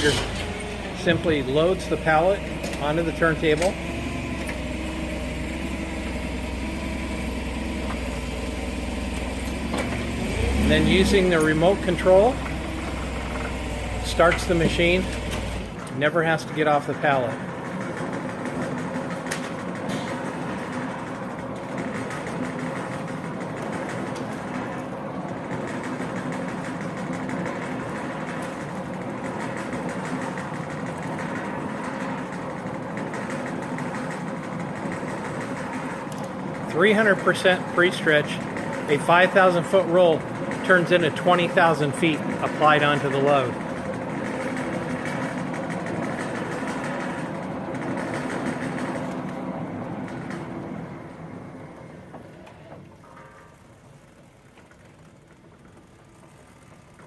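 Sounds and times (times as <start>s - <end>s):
stretch wrapper machine humming: 0.0s - 57.0s.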